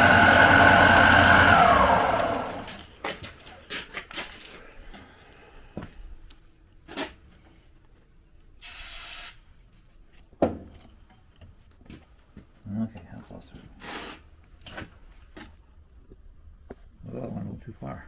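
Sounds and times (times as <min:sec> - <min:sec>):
hiss of air: 0:08.6 - 0:09.5.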